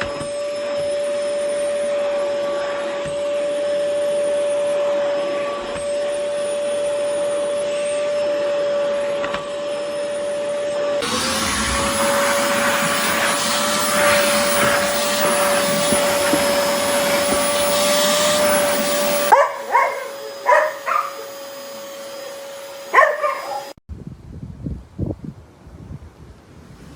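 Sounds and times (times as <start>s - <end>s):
vacuum cleaner motor whine: 0.0s - 23.8s
vacuum air rushing: 11.0s - 19.3s
dog barking: 19.3s - 21.4s, 22.9s - 23.8s.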